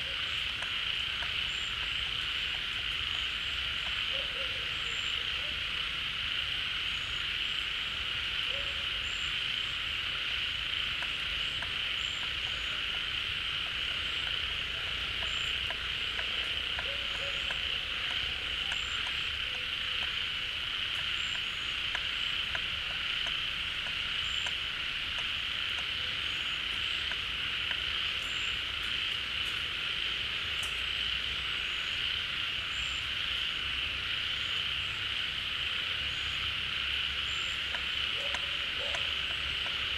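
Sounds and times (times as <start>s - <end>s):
frogs chorus: 0.0s - 39.9s.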